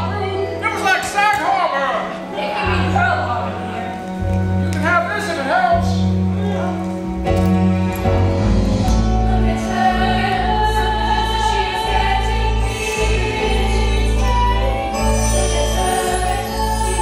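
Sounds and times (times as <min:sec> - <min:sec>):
choir singing sustained chords: 0:08.1 - 0:17.0.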